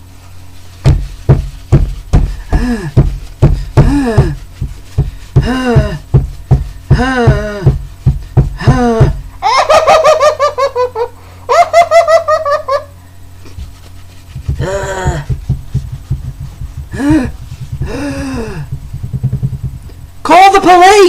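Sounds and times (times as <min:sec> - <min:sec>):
man panting grunts: 0:02.2 - 0:09.4, 0:14.5 - 0:15.4, 0:16.8 - 0:18.8
man high pulsing cries: 0:02.3 - 0:04.5, 0:05.3 - 0:12.8, 0:14.5 - 0:15.5, 0:16.8 - 0:18.8.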